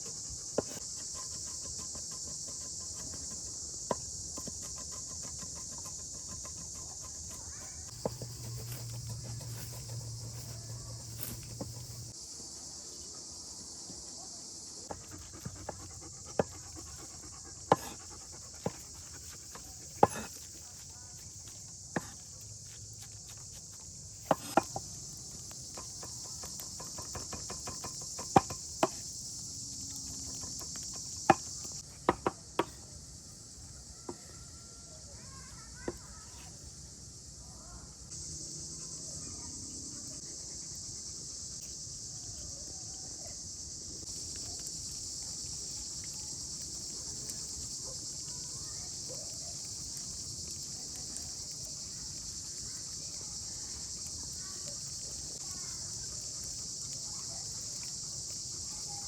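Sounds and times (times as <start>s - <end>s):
crickets chirping: 0.0s - 59.0s.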